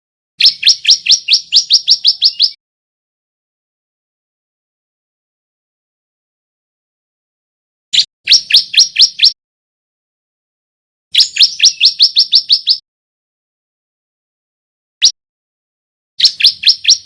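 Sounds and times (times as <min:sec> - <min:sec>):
bird singing sharp repeated notes: 0:00.4 - 0:02.6, 0:08.0 - 0:09.4, 0:11.1 - 0:12.8, 0:16.2 - 0:17.0.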